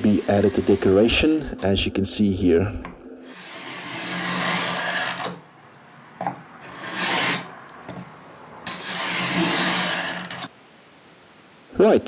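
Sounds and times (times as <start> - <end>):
hand tool rasping on wood: 0.0 - 1.1, 3.3 - 5.3, 6.6 - 7.5, 8.7 - 10.5.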